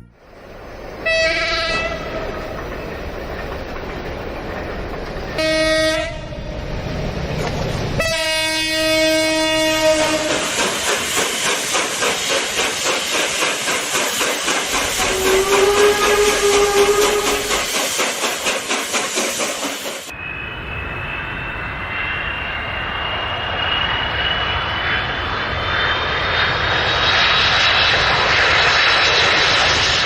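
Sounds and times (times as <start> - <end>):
train horn: 0.0 - 0.2, 1.0 - 2.5, 5.3 - 6.6, 8.0 - 10.6, 14.8 - 17.6
train rumbling on rails: 0.0 - 30.0
wheels clattering over rail joints: 2.1 - 5.4.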